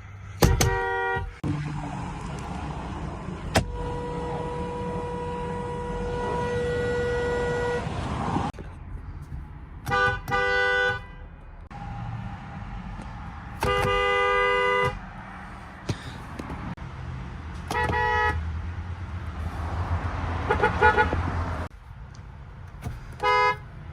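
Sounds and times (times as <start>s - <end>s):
car and road rumble: 0.0s - 23.9s
two-note car horn: 3.6s - 7.9s.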